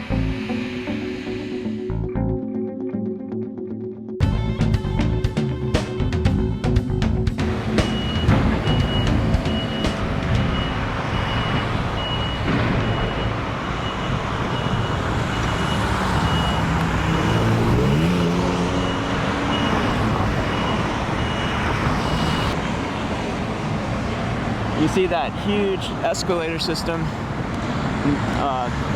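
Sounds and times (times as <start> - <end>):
traffic noise: 0.0 - 1.6, 6.8 - 28.9
vehicle engine revving: 6.4 - 22.6
reversing alarm beeping: 7.7 - 22.6.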